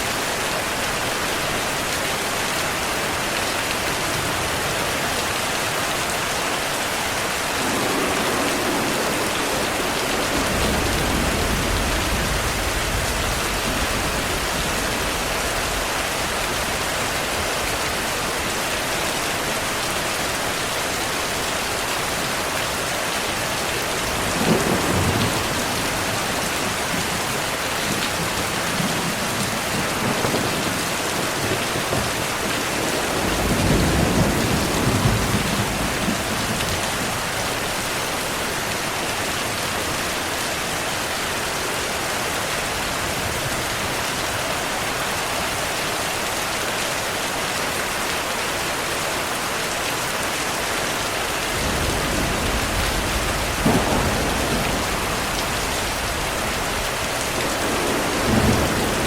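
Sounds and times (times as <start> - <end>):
heavy rain hissing: 0.0 - 59.0
thunder rumbling: 7.3 - 18.4, 23.8 - 37.9, 51.5 - 59.0.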